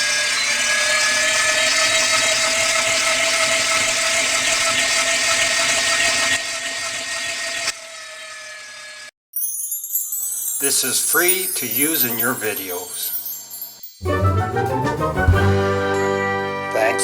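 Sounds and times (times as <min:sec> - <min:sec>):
electric drill whining and grinding: 0:00.0 - 0:09.2.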